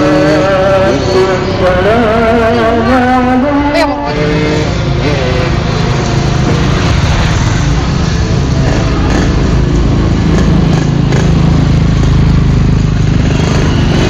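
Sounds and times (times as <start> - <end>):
two-stroke motorcycle engine running: 0.0 - 14.0.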